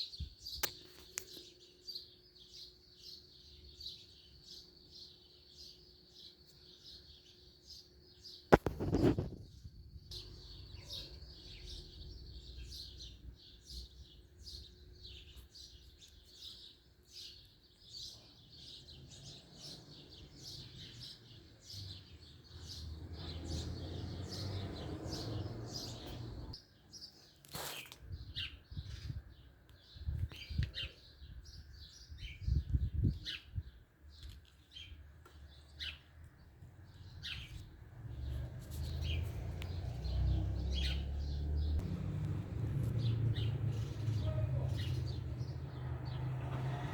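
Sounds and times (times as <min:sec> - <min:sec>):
birds chirping: 0:00.0 - 0:46.9.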